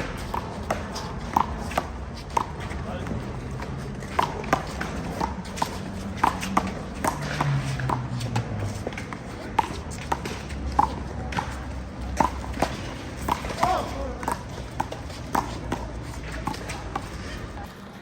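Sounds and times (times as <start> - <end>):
handball hitting hands and wall: 4.0 - 17.0.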